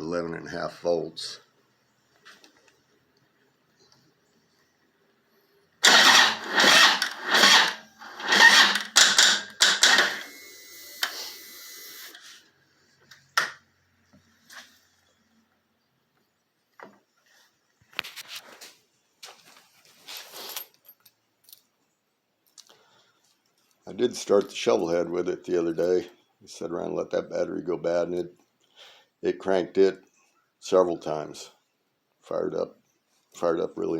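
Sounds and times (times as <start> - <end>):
motorcycle engine cranking: 5.8 - 10.3
starter whir: 5.8 - 12.2.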